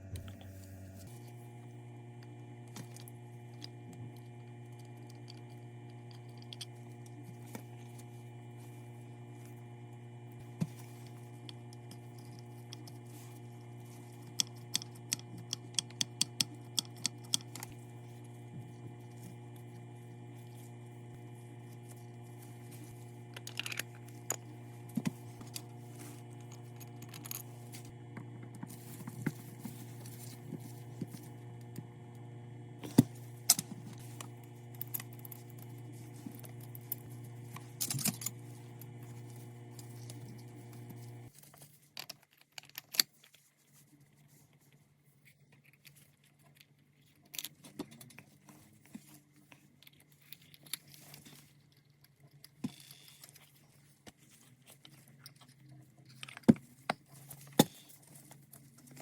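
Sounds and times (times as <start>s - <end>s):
machine hum: 0.0s - 41.3s.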